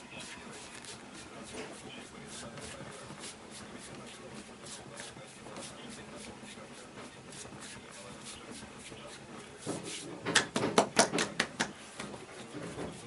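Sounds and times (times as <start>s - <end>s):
hands rubbing skin: 0.0s - 13.0s
hands slapping body: 10.3s - 12.1s.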